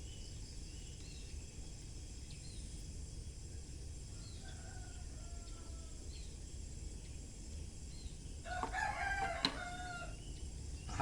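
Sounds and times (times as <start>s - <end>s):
rooster crowing: 4.2s - 6.0s, 8.4s - 10.2s.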